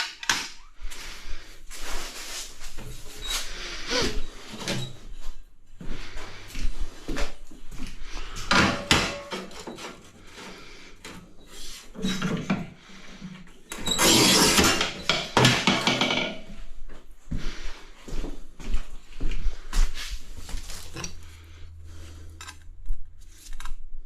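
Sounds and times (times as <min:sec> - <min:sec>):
hand tool chipping ceramic tile: 0:13.8 - 0:16.1.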